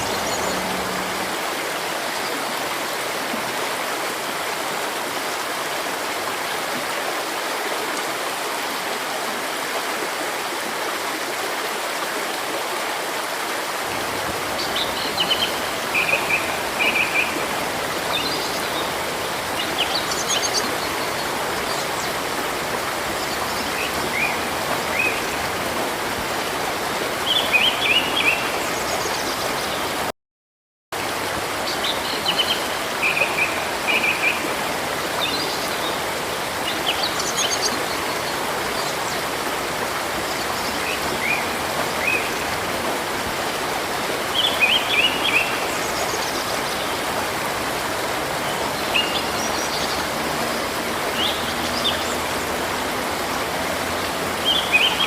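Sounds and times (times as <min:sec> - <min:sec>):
flowing river water: 0:00.0 - 0:30.1, 0:31.0 - 0:55.0.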